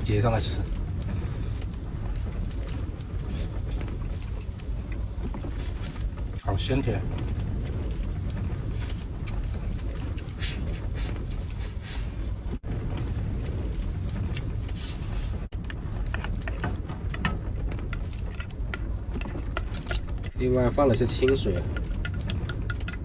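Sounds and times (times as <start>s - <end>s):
strong wind rumbling: 0.0s - 23.0s
small clicks and taps: 21.1s - 23.0s.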